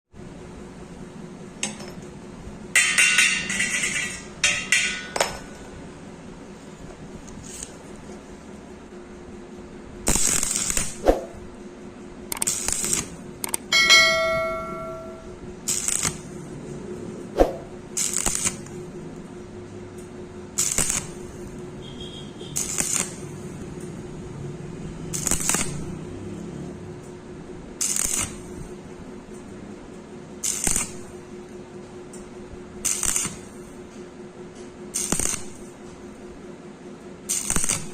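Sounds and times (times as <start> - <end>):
steady hum: 0.2 - 37.9
welding arc crackling: 2.7 - 6.0, 10.0 - 11.4, 12.3 - 16.7, 17.6 - 18.9, 20.5 - 26.1, 27.7 - 28.8, 30.4 - 31.2, 32.8 - 33.8, 34.9 - 35.8, 37.3 - 37.9
steel pieces clinking: 2.8 - 5.7.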